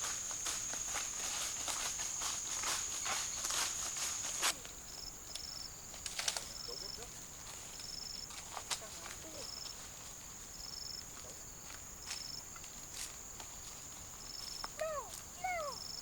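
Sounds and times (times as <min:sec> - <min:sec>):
insects droning: 0:00.0 - 0:16.0.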